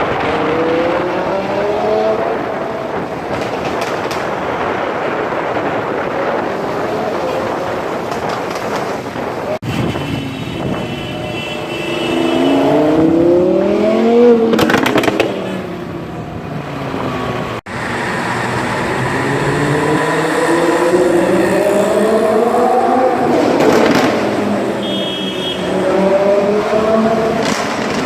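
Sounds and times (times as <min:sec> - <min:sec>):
sports car engine accelerating: 0:00.0 - 0:02.8, 0:12.1 - 0:16.1, 0:16.7 - 0:24.8, 0:25.6 - 0:28.0
exhaust crackles: 0:11.9 - 0:28.0.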